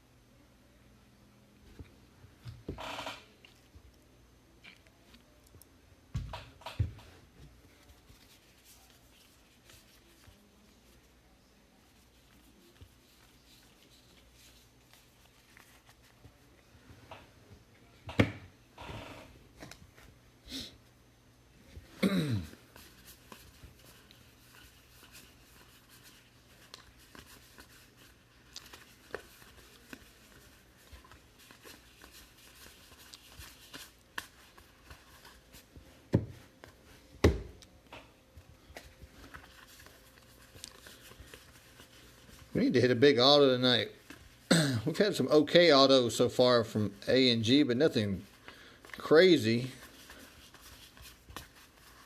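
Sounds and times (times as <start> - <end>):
card wrappers rustling: 22.8 - 35.7, 38.7 - 44.4, 46.9 - 52.0.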